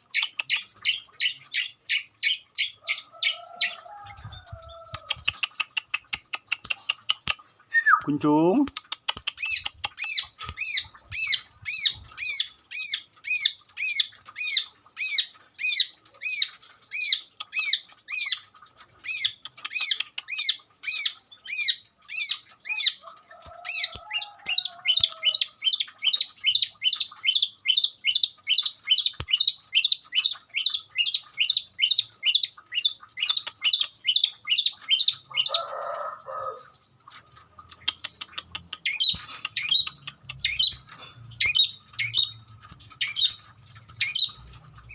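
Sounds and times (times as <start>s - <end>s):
bird singing sharp repeated notes: 9.3s - 18.4s, 25.0s - 35.2s, 37.7s - 44.9s.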